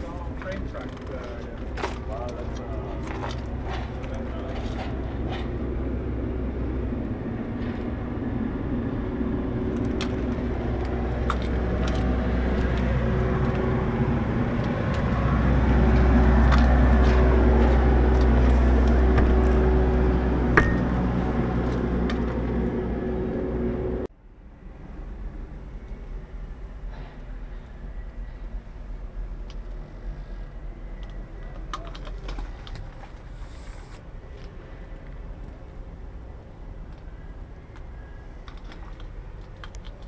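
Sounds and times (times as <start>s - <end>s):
machine droning: 2.2s - 31.4s.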